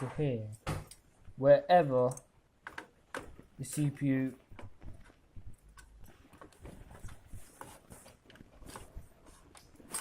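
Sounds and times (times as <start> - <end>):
cable clicks and rustles: 2.0 - 10.0.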